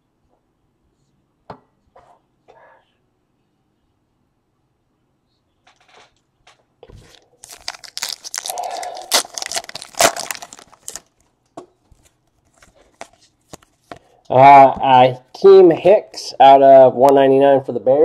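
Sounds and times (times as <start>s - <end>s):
wrapper tearing and crinkling: 7.0s - 11.2s.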